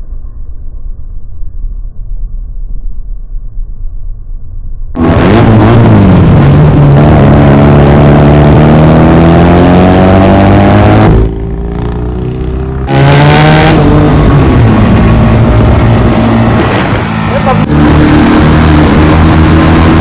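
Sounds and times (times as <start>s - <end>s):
motorcycle accelerating: 5.0s - 20.0s.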